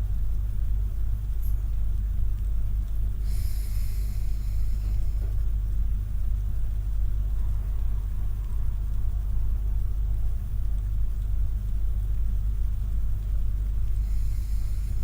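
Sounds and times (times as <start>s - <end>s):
steady low rumble: 2.2s - 15.0s
hissing breath exhale: 3.2s - 5.3s, 14.0s - 15.0s.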